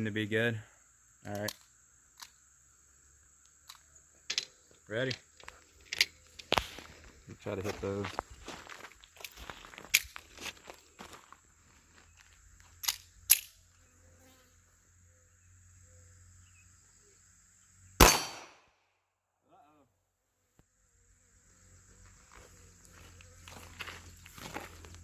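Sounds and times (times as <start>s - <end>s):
pistol shot: 18.0s - 18.7s.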